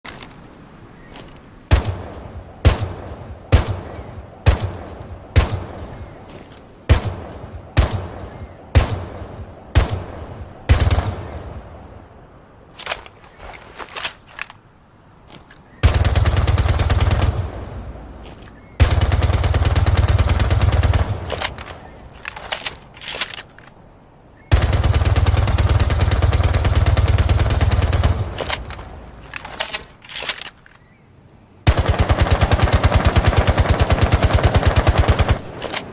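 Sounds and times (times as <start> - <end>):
automatic gunfire bursts: 31.7 - 35.9.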